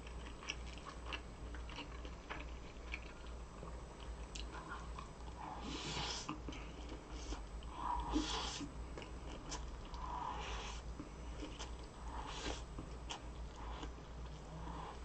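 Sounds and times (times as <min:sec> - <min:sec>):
wet chewing and biting: 0:00.0 - 0:05.4.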